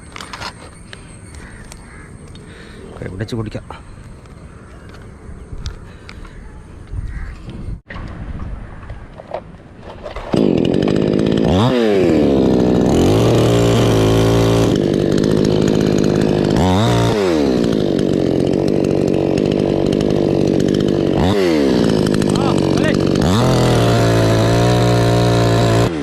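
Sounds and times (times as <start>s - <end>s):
chainsaw running at high revs: 10.2s - 26.0s.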